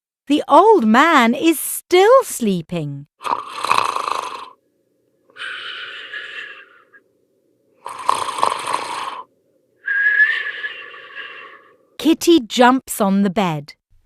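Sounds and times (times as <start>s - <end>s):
rasping snore: 3.2s - 4.6s, 7.8s - 9.3s, 9.9s - 11.8s
whistling breath out: 5.3s - 7.0s, 9.8s - 11.8s.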